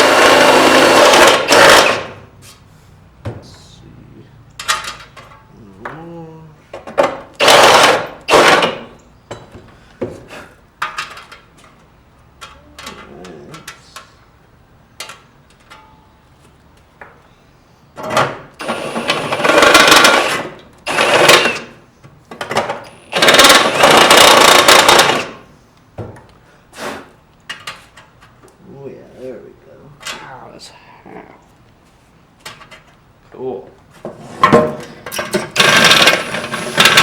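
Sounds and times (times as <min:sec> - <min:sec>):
power tool cutting sheet metal: 0:00.0 - 0:02.2, 0:07.4 - 0:08.9, 0:18.6 - 0:21.8, 0:22.9 - 0:25.4, 0:35.5 - 0:37.0.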